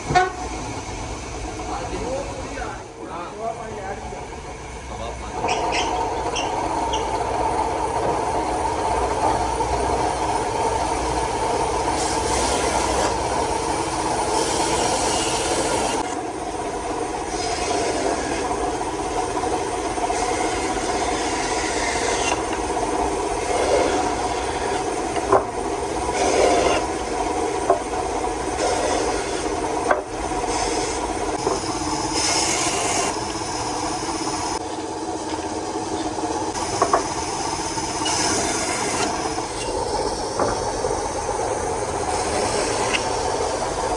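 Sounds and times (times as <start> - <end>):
woodworking machine motor: 0.0 - 43.9
rasping wood abrasion: 14.2 - 31.4.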